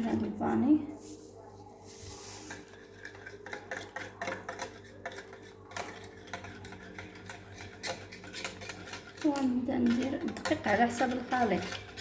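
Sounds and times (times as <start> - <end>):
beaters tapping bowl: 3.0 - 12.0.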